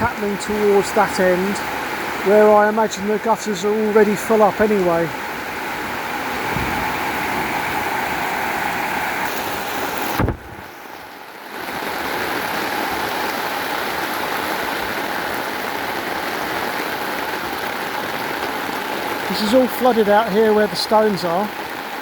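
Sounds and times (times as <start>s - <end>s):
heavy rain: 0.0s - 22.0s
water rushing off a roof: 0.0s - 22.0s
short knock: 10.2s - 10.5s.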